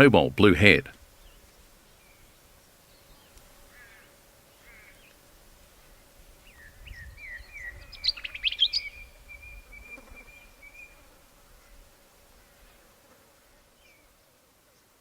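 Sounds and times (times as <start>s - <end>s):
small birds chirping: 1.1s - 5.2s, 6.4s - 11.8s, 13.8s - 14.2s.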